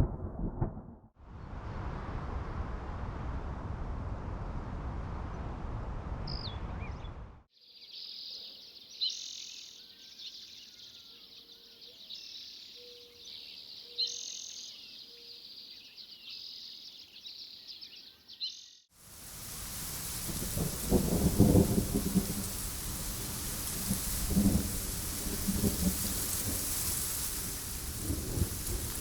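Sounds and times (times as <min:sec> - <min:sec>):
bird calls: 0:06.3 - 0:18.8
insects chirping: 0:19.0 - 0:29.0
steady rush of noise: 0:19.0 - 0:29.0.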